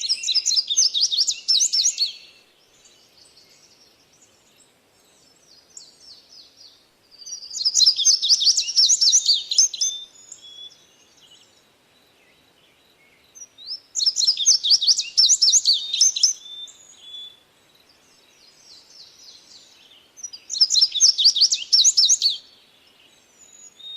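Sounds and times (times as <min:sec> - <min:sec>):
bird singing: 0:00.0 - 0:23.9
soft bird chirps: 0:00.0 - 0:23.9.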